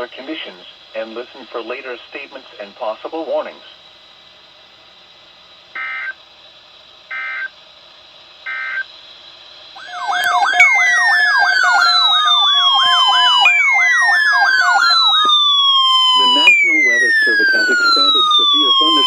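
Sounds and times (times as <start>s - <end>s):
electronic siren yelping and wailing: 5.8s - 6.2s, 7.1s - 7.5s, 8.5s - 8.8s, 9.8s - 19.0s
two-tone digital data screech: 5.8s - 6.2s, 7.1s - 7.5s, 8.5s - 8.8s, 9.8s - 19.0s.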